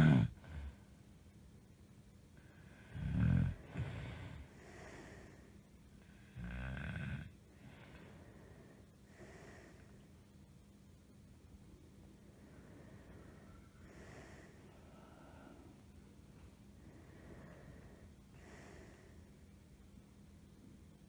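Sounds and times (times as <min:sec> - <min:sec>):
woman snoring: 0:00.0 - 0:00.7, 0:02.8 - 0:05.4, 0:06.2 - 0:07.4
soft breath: 0:02.4 - 0:06.4, 0:07.3 - 0:10.3, 0:11.7 - 0:19.6.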